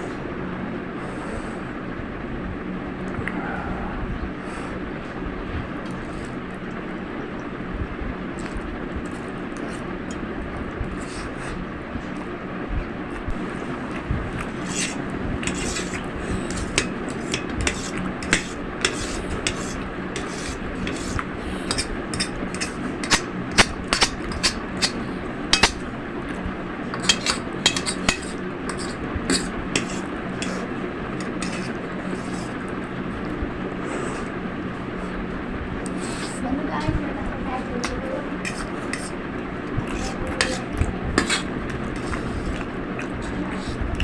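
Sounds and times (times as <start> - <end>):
steady background hum: 0.0 - 44.0
utensil clinking against a dish: 13.9 - 32.6, 37.7 - 43.8.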